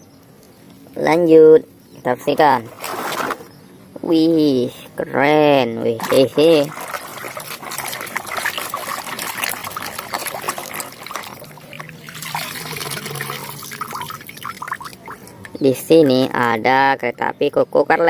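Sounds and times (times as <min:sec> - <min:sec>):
water splashing and trickling: 0:05.9 - 0:17.6.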